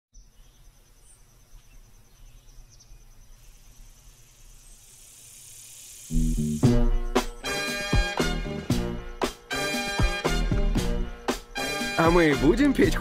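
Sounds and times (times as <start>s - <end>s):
crickets trilling: 0.2s - 13.0s
hiss: 3.5s - 8.0s
upbeat funky music: 6.1s - 13.0s.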